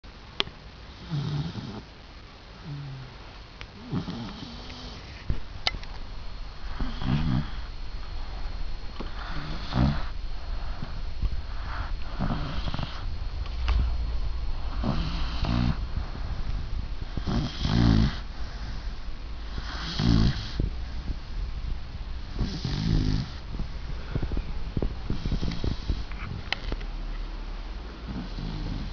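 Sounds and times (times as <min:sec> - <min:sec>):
puppy snoring: 0:00.9 - 0:02.0, 0:02.6 - 0:03.2, 0:03.8 - 0:05.3, 0:06.6 - 0:14.0, 0:14.6 - 0:21.4, 0:22.2 - 0:26.5, 0:28.0 - 0:28.9.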